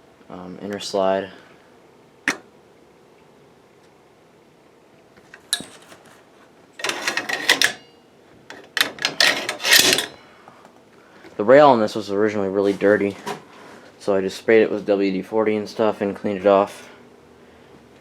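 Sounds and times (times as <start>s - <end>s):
metal parts clicking and clattering: 5.4s - 6.0s, 6.8s - 7.8s, 8.5s - 10.2s.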